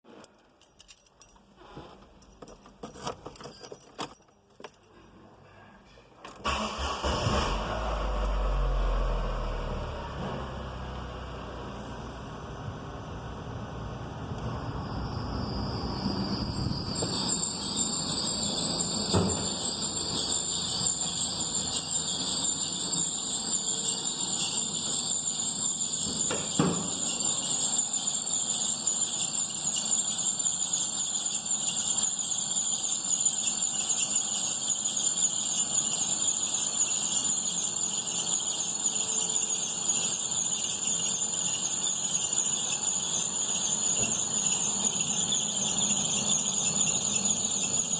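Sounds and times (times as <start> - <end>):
accessory belt squealing: 16.2 - 47.9
car engine running: 16.6 - 26.3.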